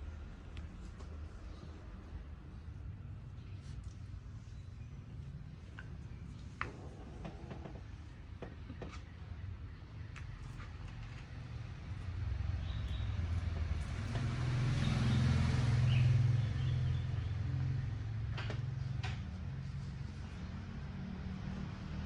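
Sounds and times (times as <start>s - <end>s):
vehicle engine passing by: 11.4s - 22.0s.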